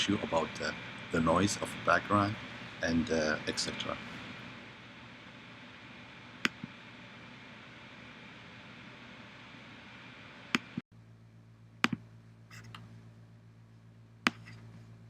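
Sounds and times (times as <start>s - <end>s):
steady hiss: 0.0s - 10.8s
low hum: 0.0s - 15.0s.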